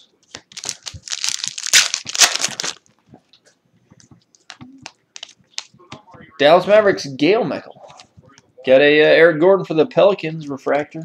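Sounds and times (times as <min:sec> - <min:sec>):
foil wrapper crinkling and tearing: 0:00.5 - 0:02.9.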